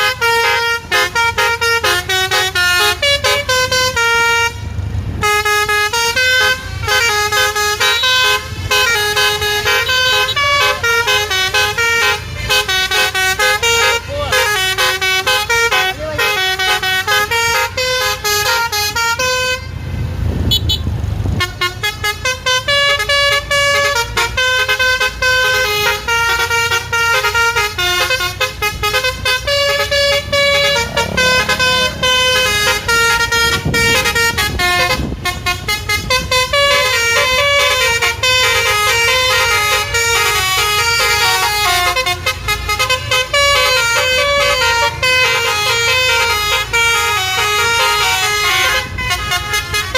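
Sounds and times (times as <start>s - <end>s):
musical bus horn melody: 0.0s - 19.9s, 20.5s - 49.9s.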